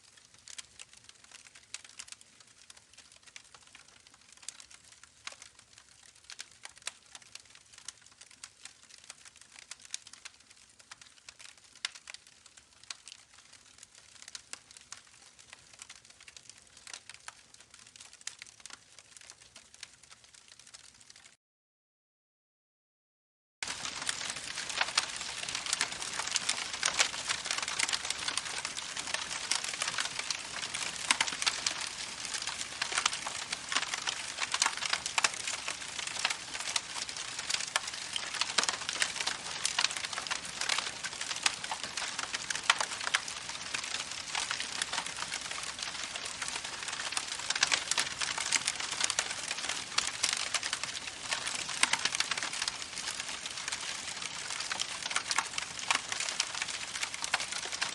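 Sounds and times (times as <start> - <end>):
campfire crackling: 0.1 - 21.3, 23.6 - 57.9.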